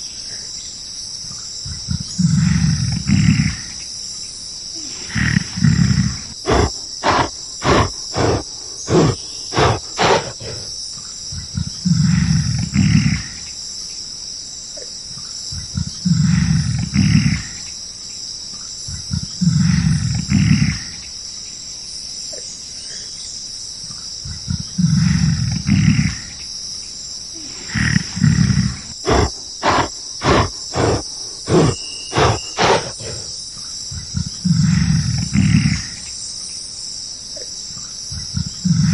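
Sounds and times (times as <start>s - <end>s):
high insect drone: 0.0s - 38.9s
gorilla deep roars: 1.9s - 3.8s, 4.8s - 10.8s, 11.4s - 13.5s, 15.7s - 17.7s, 19.1s - 21.0s, 24.3s - 26.4s, 27.4s - 33.4s, 34.0s - 36.1s, 38.4s - 38.9s
gorilla chest beating strokes: 4.8s - 13.2s, 27.5s - 33.4s.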